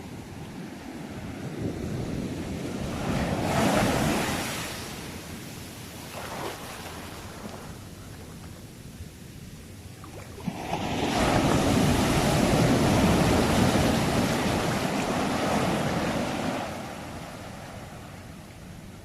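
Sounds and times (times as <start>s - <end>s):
steady wash of water: 2.4s - 8.2s, 10.0s - 18.2s.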